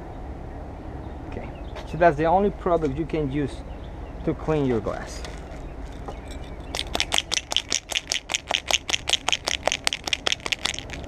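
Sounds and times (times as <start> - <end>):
mixing ball rattling in bottle: 6.0 - 11.0.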